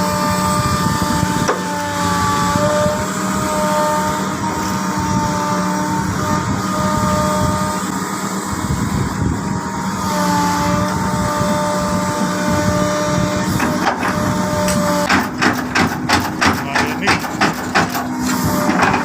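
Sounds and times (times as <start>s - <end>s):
excavator diesel engine running: 0.0s - 19.0s
whining tones: 0.0s - 19.0s
bucket pounding the ground: 15.1s - 19.0s.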